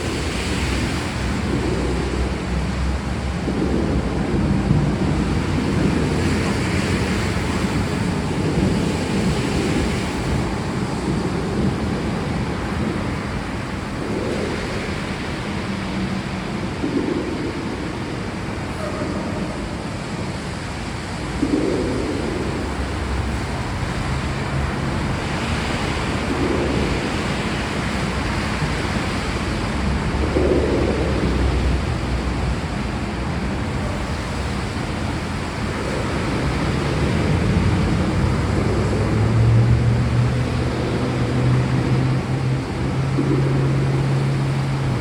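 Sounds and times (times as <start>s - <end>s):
heavy rain: 0.0s - 45.0s.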